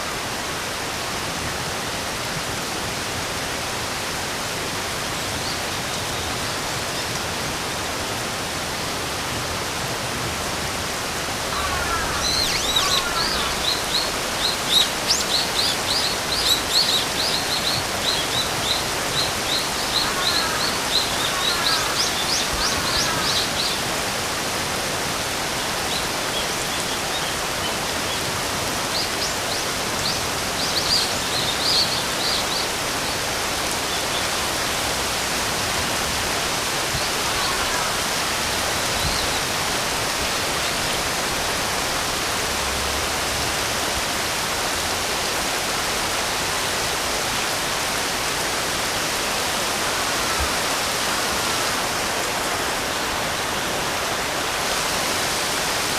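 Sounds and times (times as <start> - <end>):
rain hissing: 0.0 - 55.9
birds chirping: 11.5 - 23.8.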